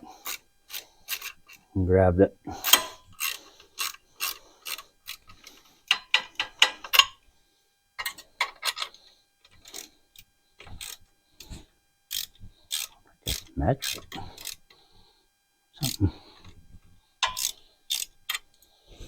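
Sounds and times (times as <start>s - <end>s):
ratchet wrench clicking: 0.2s - 1.6s, 2.6s - 7.1s, 8.0s - 11.0s, 12.1s - 14.7s, 17.2s - 18.7s.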